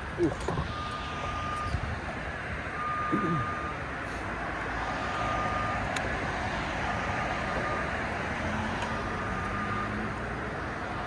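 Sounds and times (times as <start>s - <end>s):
motion alarm long high beeps: 2.8s - 3.8s.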